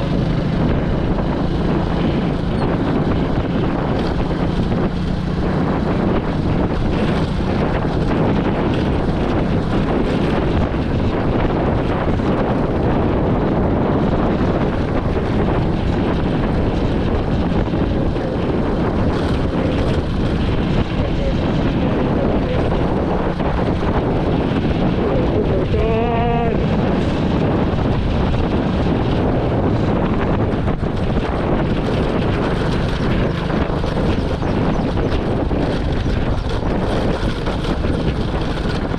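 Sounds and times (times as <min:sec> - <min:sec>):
vehicle running noise: 0:00.0 - 0:38.9
wind buffeting microphone: 0:00.0 - 0:38.9.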